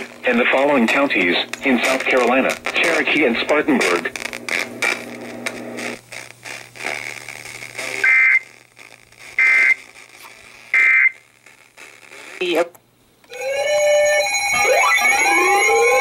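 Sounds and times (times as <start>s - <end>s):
faint radio hiss: 0.0s - 13.3s
shrill digital screeches: 13.3s - 16.0s.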